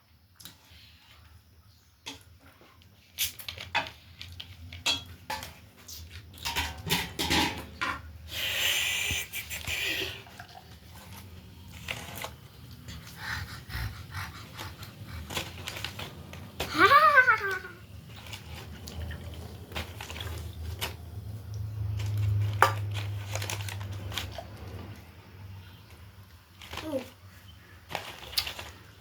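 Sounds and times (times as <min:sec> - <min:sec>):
dishes and cutlery clinking: 0:06.4 - 0:08.0.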